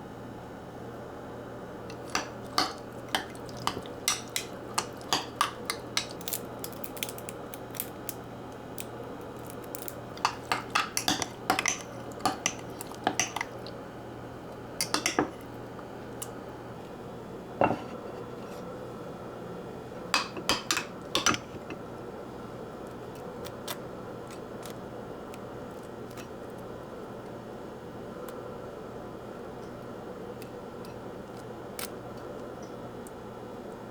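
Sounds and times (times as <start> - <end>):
cutlery clinking against dishes: 1.9 - 6.2, 10.2 - 13.6, 14.8 - 15.4, 20.2 - 21.8.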